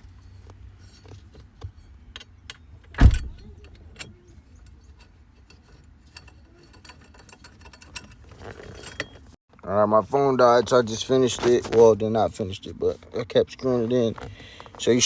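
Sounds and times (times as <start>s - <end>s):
metal bolts clicking and rattling: 0.1s - 9.4s.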